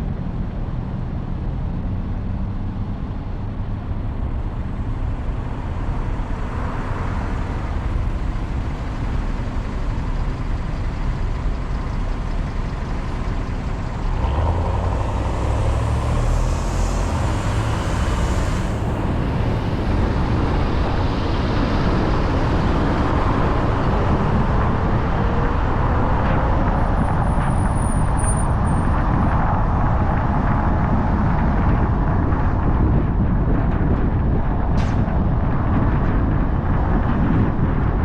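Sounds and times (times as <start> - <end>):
car tyre and engine noise: 0.0 - 38.0
road hiss: 12.8 - 19.2.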